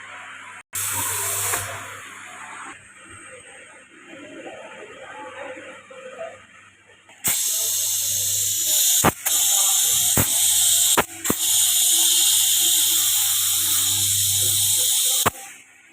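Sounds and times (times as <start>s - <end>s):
compressed air hissing: 0.8s - 2.0s, 7.2s - 15.5s.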